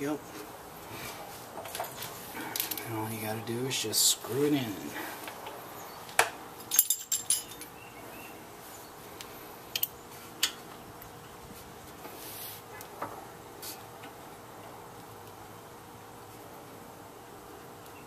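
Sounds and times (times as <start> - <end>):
light metallic clicks and clinks: 6.7 - 7.7.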